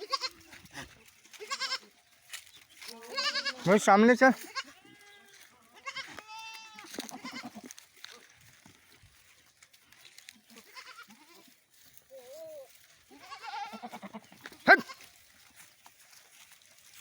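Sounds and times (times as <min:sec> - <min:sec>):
goats bleating: 0:00.0 - 0:02.0, 0:02.8 - 0:09.0, 0:10.0 - 0:15.2.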